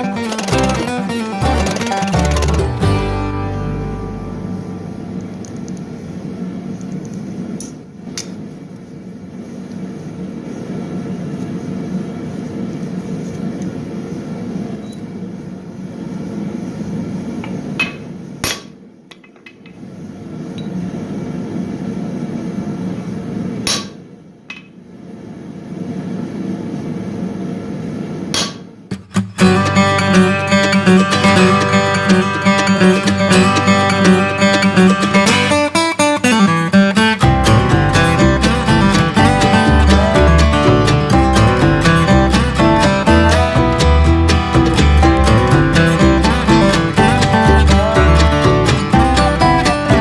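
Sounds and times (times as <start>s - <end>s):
low running shop equipment: 0.0s - 50.0s.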